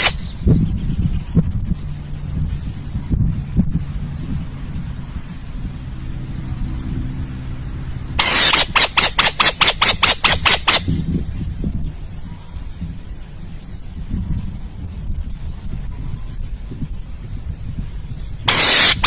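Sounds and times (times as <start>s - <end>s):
owl screeching: 0.0s - 0.3s, 8.2s - 11.0s, 18.5s - 19.0s.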